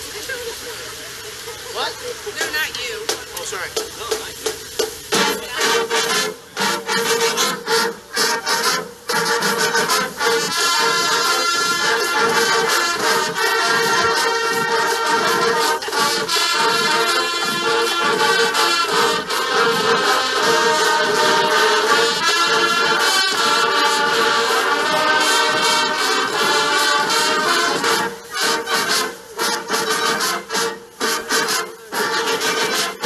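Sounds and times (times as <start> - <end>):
marching band playing: 0.0 - 33.0.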